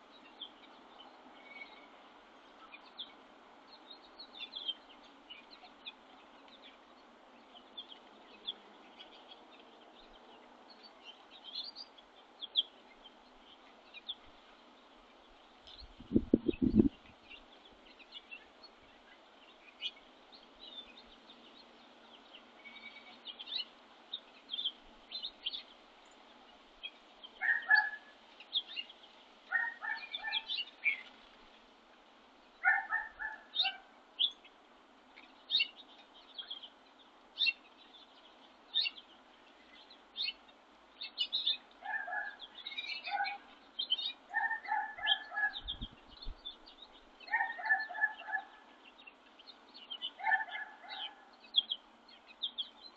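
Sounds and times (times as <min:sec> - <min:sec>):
high bird chirps: 0:15.9 - 0:16.9.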